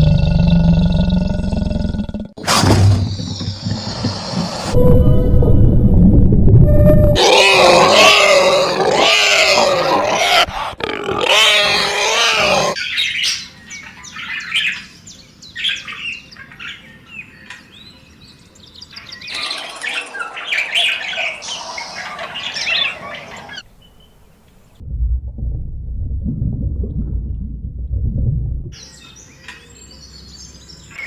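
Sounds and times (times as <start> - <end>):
bird-like chirps: 12.8 - 24.2.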